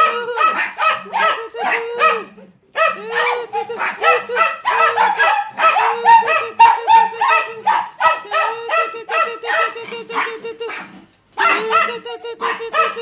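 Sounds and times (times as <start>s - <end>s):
dogs barking: 0.0s - 13.0s.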